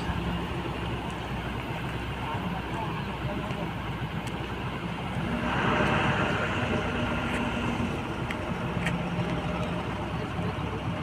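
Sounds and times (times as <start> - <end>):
vehicle engine hum: 0.0 - 11.0
rushing noise: 4.9 - 10.2.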